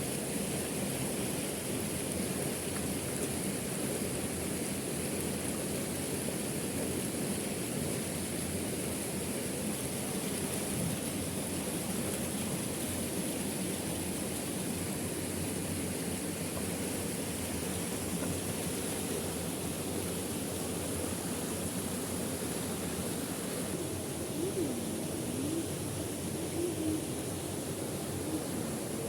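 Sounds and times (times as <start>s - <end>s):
waterfall rushing water: 0.1s - 29.0s.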